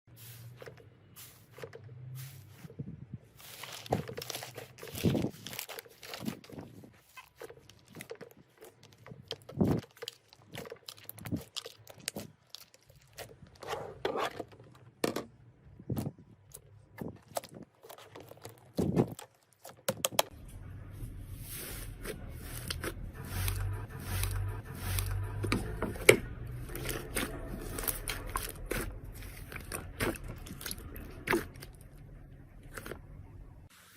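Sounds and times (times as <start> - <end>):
slime crackling and popping: 7.2 - 13.4.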